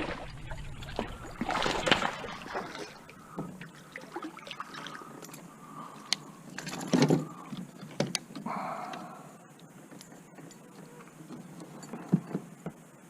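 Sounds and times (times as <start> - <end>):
fishing gear clicks and knocks: 4.9 - 12.9.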